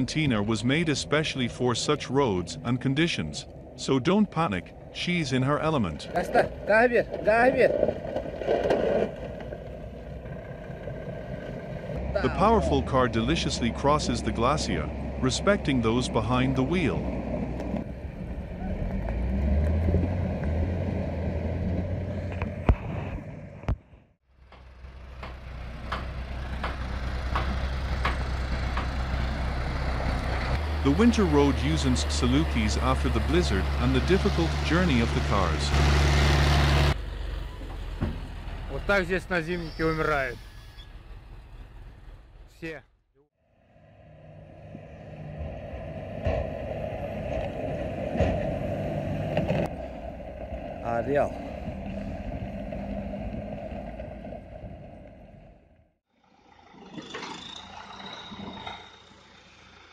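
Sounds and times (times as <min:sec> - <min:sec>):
heavy vehicle engine running: 0:09.4 - 0:23.7, 0:24.3 - 0:39.5, 0:43.6 - 0:59.9
heavy truck engine running: 0:24.3 - 0:39.5, 0:57.3 - 0:59.9.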